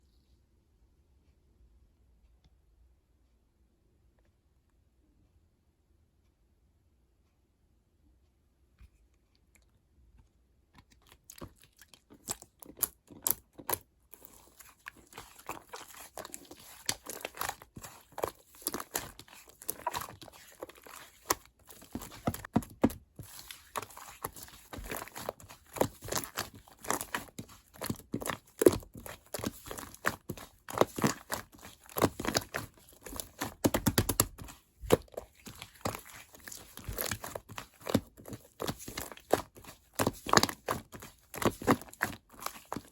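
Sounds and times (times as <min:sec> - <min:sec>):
slime squished by hand: 0:10.8 - 0:42.9.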